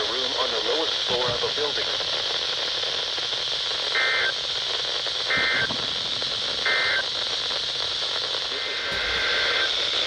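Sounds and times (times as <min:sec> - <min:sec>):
radio static hiss: 0:00.0 - 0:10.0
digital data tone bursts: 0:08.9 - 0:09.9.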